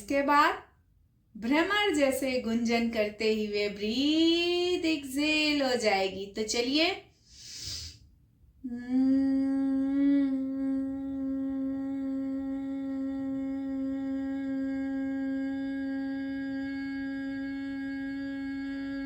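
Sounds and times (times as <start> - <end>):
woman breathing in: 7.1 - 8.1
woman humming a low note: 8.6 - 19.0.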